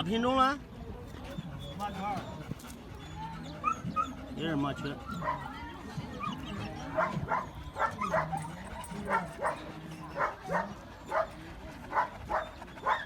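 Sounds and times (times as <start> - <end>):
dog yipping: 5.0 - 9.6.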